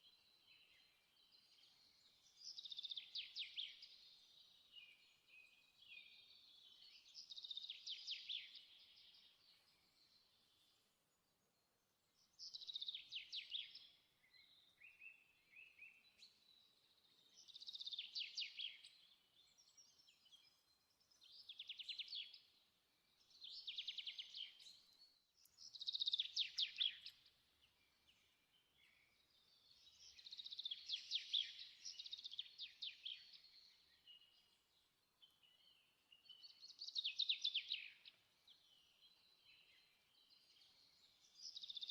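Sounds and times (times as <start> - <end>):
bird singing trilled phrases: 12.4 - 27.5, 28.2 - 34.6, 35.2 - 41.9.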